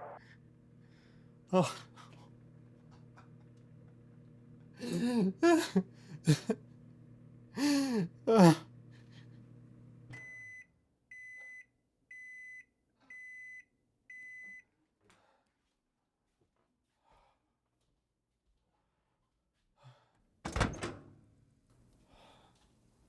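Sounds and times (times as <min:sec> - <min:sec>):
microwave oven humming: 0:00.0 - 0:10.6
man's loud voice: 0:01.6 - 0:01.8, 0:04.8 - 0:06.6, 0:07.6 - 0:08.6
microwave beeps: 0:09.9 - 0:14.6.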